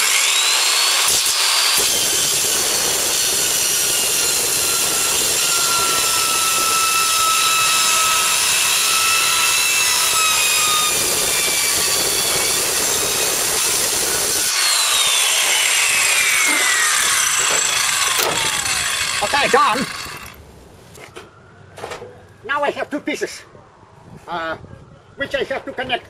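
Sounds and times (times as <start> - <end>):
circular saw cutting metal: 0.0 - 20.4
saw blade spinning down: 0.0 - 20.4.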